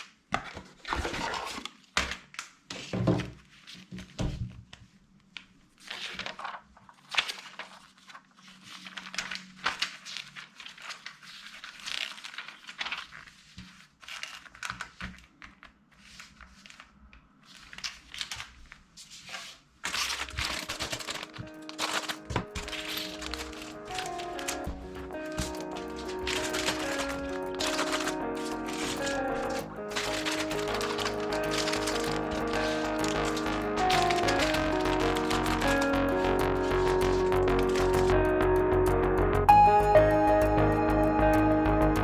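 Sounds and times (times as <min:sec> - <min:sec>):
plastic bags crinkling and tearing: 0:05.8 - 0:16.9, 0:17.5 - 0:38.2
music: 0:20.7 - 0:42.0.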